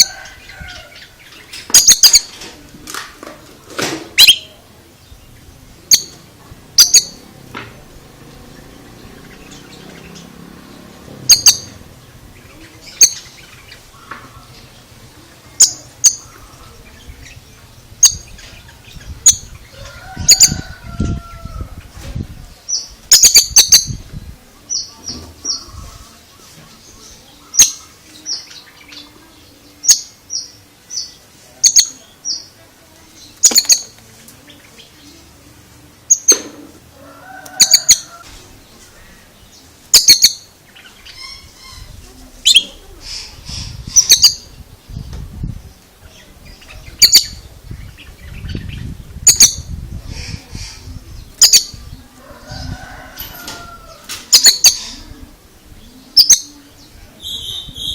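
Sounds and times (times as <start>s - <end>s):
short high bird chirps: 4.2s - 4.5s.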